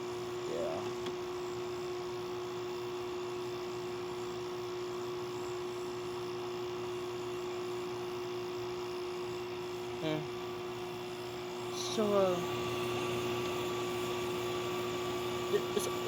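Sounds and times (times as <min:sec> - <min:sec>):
air conditioner humming: 0:00.0 - 0:16.0
fan air rushing: 0:10.9 - 0:16.0.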